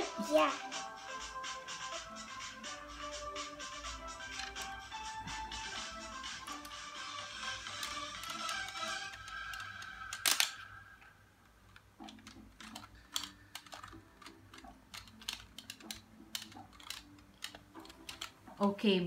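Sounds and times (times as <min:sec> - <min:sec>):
music: 0:00.0 - 0:19.0
plastic toy parts clicking: 0:04.2 - 0:04.8, 0:07.6 - 0:10.7, 0:11.6 - 0:18.4.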